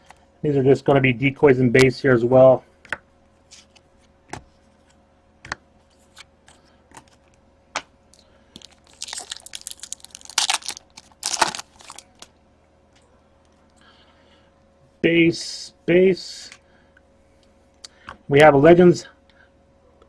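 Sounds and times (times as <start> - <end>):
trading cards being handled: 8.5 - 12.3
foil wrapper tearing: 8.6 - 12.2.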